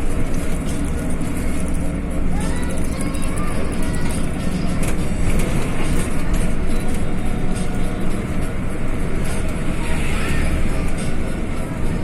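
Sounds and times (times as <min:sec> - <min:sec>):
bus engine running: 0:00.0 - 0:12.0.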